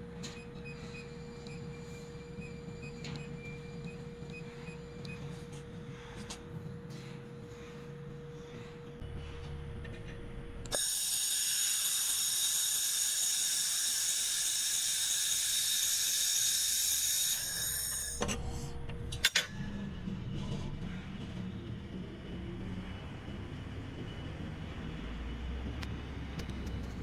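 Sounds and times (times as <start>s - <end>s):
machine low hum: 0.0s - 10.8s, 18.1s - 27.0s
laser welder hissing and whining: 10.7s - 18.2s.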